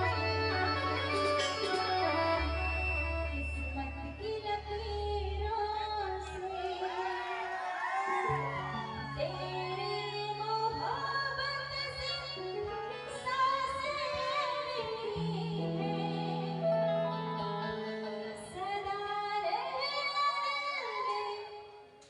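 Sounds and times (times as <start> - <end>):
instrumental accompaniment: 0.0 - 6.1
woman singing long wavering notes: 0.0 - 7.0, 8.4 - 12.4, 13.3 - 20.1.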